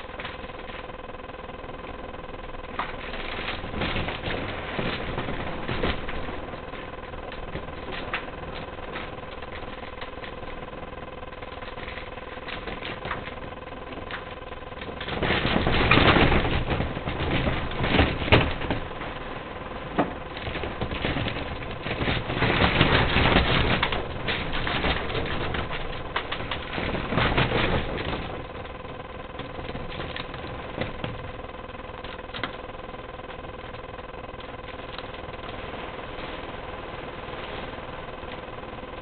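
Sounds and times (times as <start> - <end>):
roller shutter slats rattling: 2.6 - 10.6, 14.1 - 31.5.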